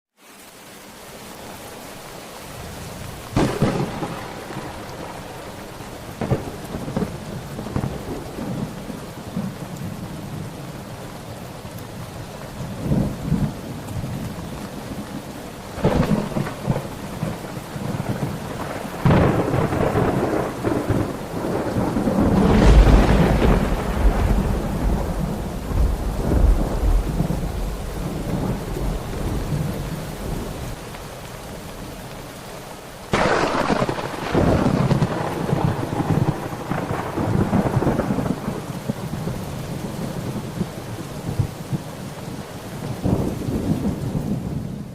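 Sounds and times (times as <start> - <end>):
heavy rain: 0.1 - 44.9
rolling rumble of thunder: 3.1 - 10.8, 12.6 - 30.8, 33.1 - 42.0, 43.0 - 44.9
thunder cracks: 3.3 - 5.4, 6.1 - 9.6, 15.8 - 29.7, 33.1 - 39.0.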